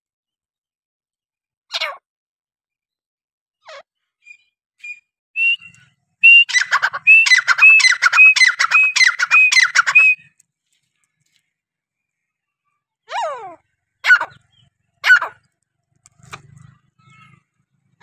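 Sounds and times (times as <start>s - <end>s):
partridge calling: 3.7s - 10.3s, 14.0s - 15.5s.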